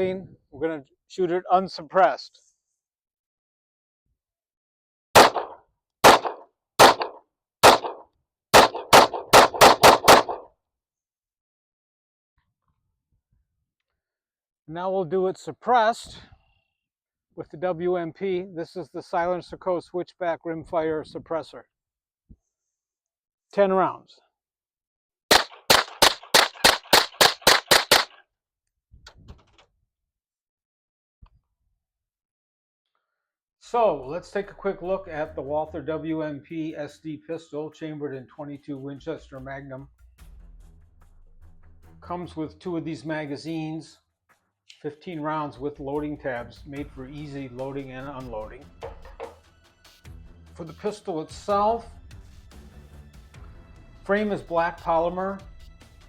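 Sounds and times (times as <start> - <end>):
pistol shots: 5.2 - 8.0, 8.6 - 10.5, 25.3 - 28.2.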